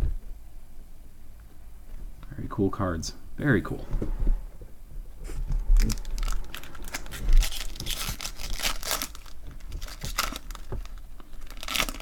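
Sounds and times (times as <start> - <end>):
low bump: 3.8 - 7.5
wrapper crinkling and tearing: 5.8 - 12.0.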